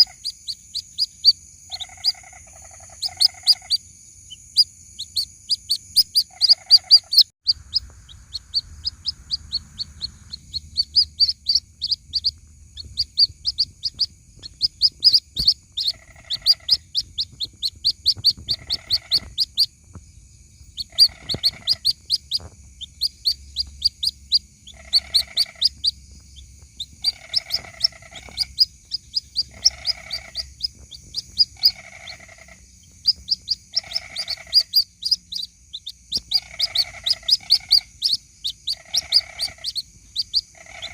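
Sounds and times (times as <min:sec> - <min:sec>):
lower bird call: 0:00.0 - 0:19.7, 0:20.6 - 0:40.9
chicks peeping: 0:00.0 - 0:20.0, 0:20.6 - 0:40.9.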